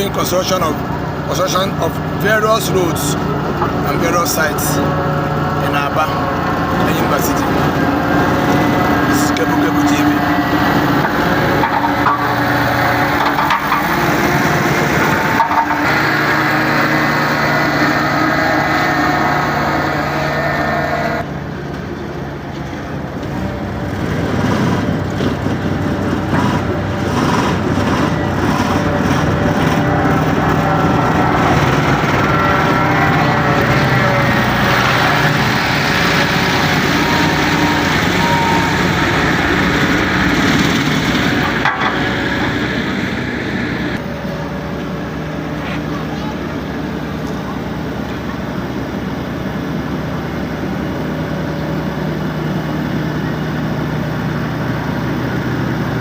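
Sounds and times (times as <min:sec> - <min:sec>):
construction engines running: 0:00.0 - 0:56.0.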